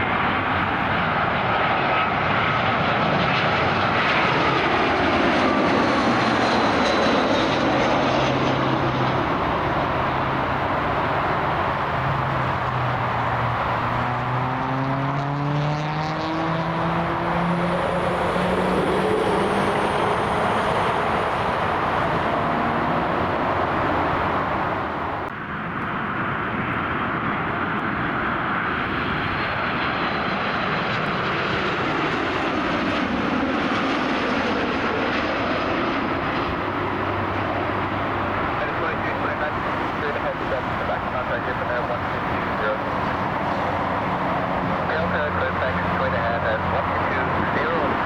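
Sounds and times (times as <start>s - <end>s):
jet engines roaring: 0.0s - 48.0s.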